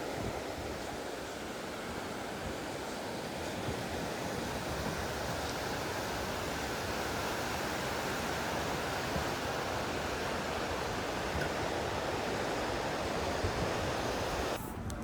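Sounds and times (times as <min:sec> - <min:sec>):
mountain stream rushing: 0:00.0 - 0:14.6.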